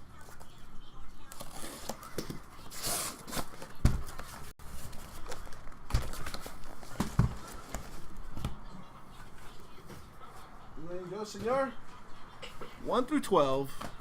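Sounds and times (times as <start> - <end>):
packaging rustling: 1.3 - 8.4.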